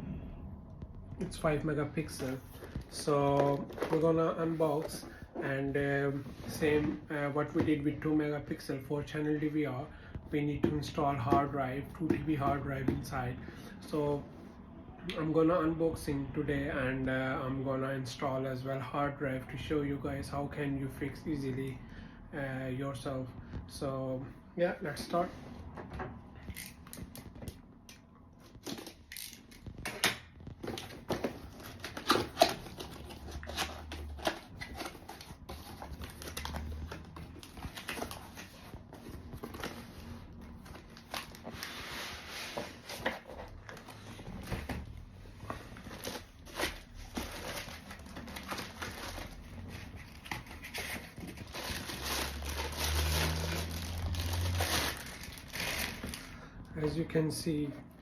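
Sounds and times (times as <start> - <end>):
packaging crinkling and tearing: 28.4 - 41.8, 45.5 - 56.5.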